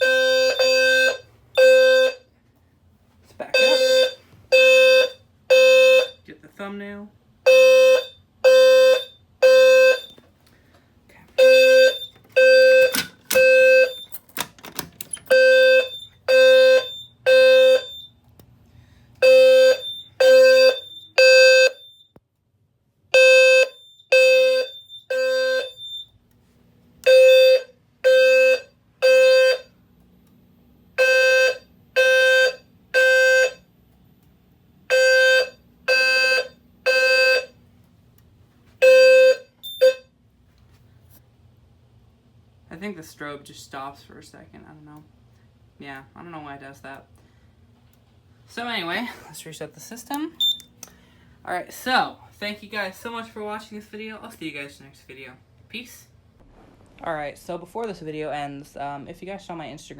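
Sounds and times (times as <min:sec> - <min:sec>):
buzzy fire alarm horn beeps: 0:00.0 - 0:02.4, 0:03.5 - 0:06.3, 0:07.4 - 0:10.2, 0:11.4 - 0:14.2, 0:15.1 - 0:18.3, 0:19.2 - 0:22.2, 0:23.1 - 0:26.2, 0:27.0 - 0:29.9, 0:30.9 - 0:33.8, 0:34.8 - 0:37.6, 0:38.8 - 0:40.2, 0:50.4 - 0:50.7
higher-pitched alarm tone: 0:03.6 - 0:06.1.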